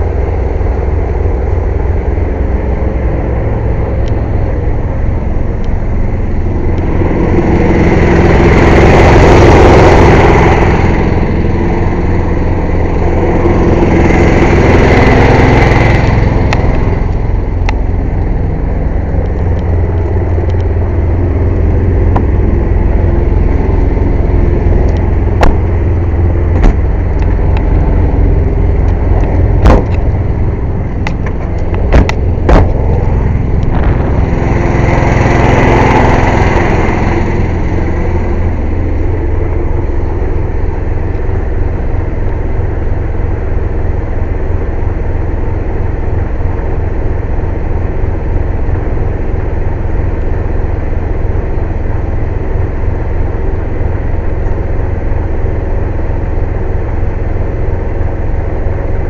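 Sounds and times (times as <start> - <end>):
air compressor droning: 0.0 - 59.0
sharp knocks: 31.1 - 33.0.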